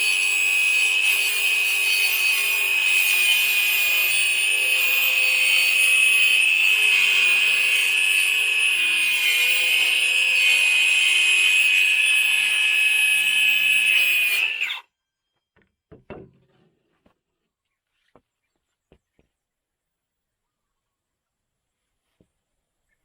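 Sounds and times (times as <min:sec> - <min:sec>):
circular saw cutting plywood: 0:00.0 - 0:14.8
faint knocks: 0:15.6 - 0:17.1.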